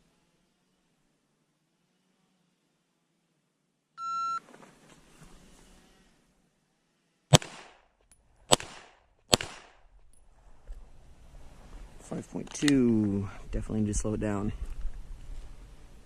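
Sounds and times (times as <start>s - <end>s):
shot timer beep: 4.0s - 4.4s
pistol shots with echo: 7.3s - 7.8s, 8.5s - 9.8s.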